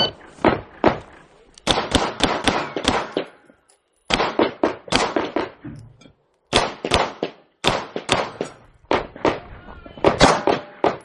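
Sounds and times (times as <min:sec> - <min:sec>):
pistol shots: 0:00.4 - 0:03.4, 0:04.1 - 0:05.6, 0:06.5 - 0:09.4, 0:10.0 - 0:11.0.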